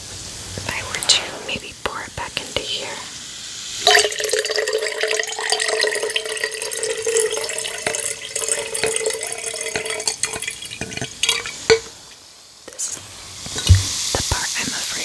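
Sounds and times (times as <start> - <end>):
water pouring between containers: 3.8 - 12.1, 13.5 - 14.0.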